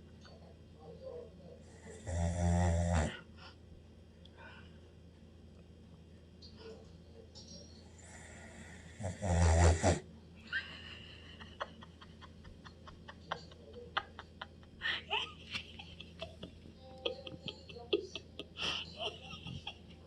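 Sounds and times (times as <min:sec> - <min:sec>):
soft breathy laughter: 0:10.4 - 0:20.0.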